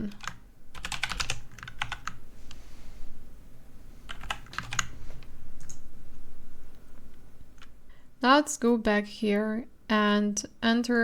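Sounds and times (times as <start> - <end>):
computer keyboard typing: 0.0 - 2.2, 4.1 - 4.9.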